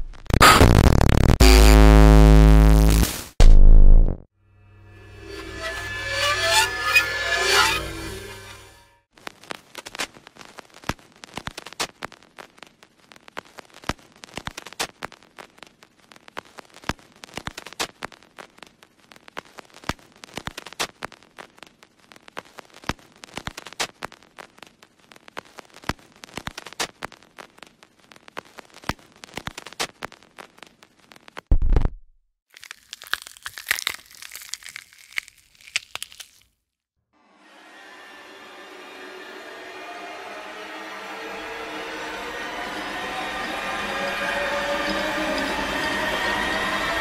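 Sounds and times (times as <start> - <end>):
crackling clicks: 9.1 - 32.0.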